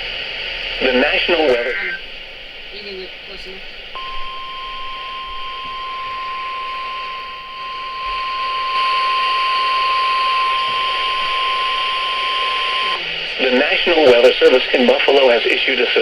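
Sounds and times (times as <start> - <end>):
radio static hiss: 0.0 - 16.0
long steady alarm beep: 4.0 - 15.0.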